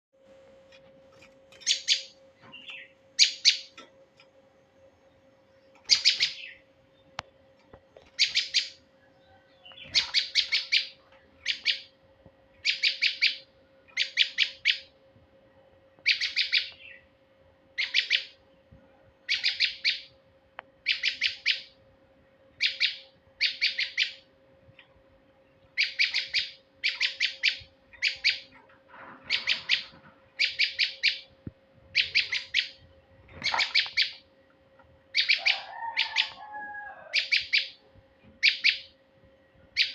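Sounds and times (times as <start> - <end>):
bird calling sharp chips: 33.4 - 34.2.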